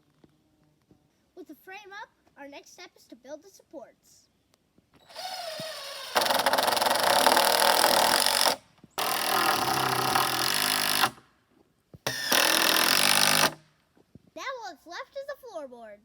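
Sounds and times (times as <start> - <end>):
power driver rattling: 5.1 - 11.2, 12.1 - 13.6.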